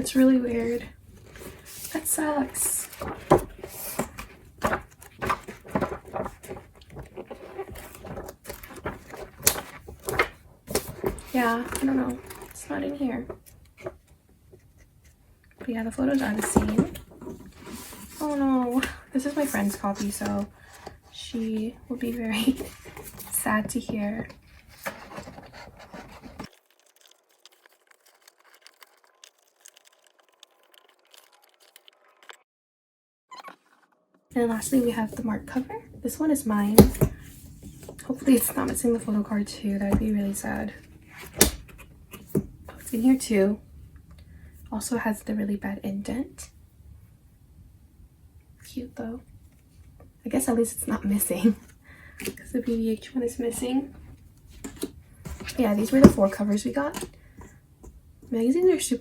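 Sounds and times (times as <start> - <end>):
magazine pages rustling: 0.6 - 14.7, 16.1 - 32.0
page snapping: 41.3 - 41.8.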